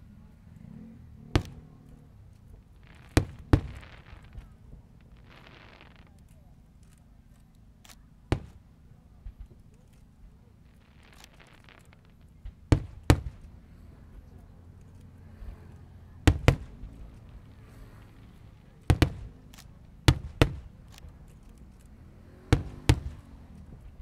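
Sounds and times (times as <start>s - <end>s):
low steady rumble: 0.0s - 24.0s
fireworks bangs: 0.4s - 24.0s.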